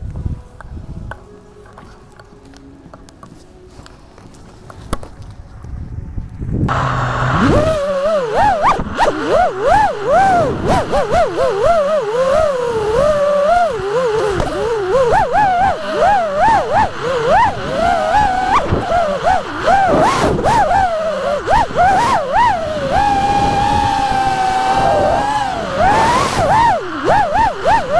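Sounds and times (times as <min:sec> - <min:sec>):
quadcopter motors whining: 0:06.7 - 0:27.9.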